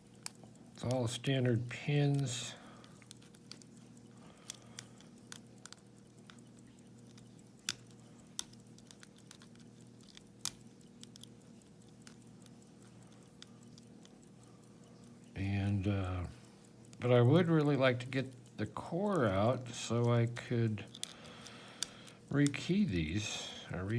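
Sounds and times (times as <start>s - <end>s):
faint steady hum: 0.0s - 23.9s
lock pick clicking in padlock: 2.9s - 14.2s, 20.8s - 22.2s.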